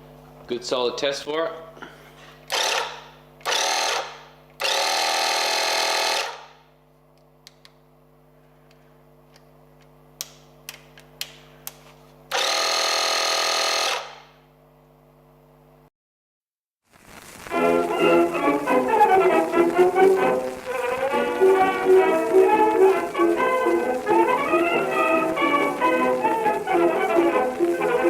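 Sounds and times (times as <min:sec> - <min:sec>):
faint steady hum: 0:00.0 - 0:15.9, 0:16.9 - 0:28.0
tyre compressor rattling buzz: 0:02.5 - 0:06.6, 0:12.3 - 0:14.3.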